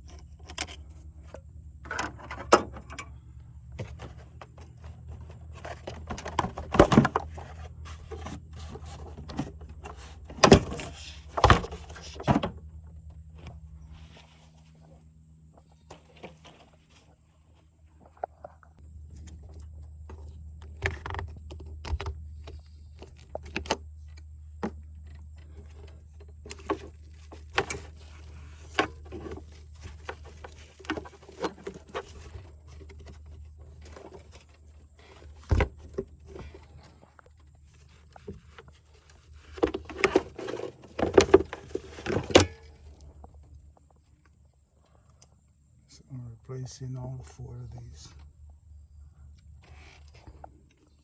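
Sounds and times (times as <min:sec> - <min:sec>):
steady low hum: 0:00.0 - 0:51.0.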